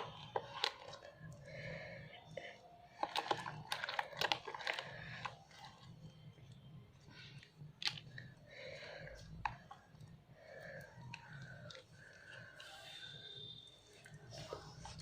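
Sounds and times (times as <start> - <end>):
slime squelching and popping: 2.9 - 12.9.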